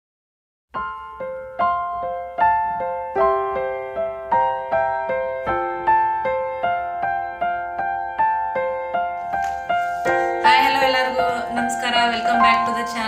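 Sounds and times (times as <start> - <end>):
gentle piano melody: 0.8 - 13.0.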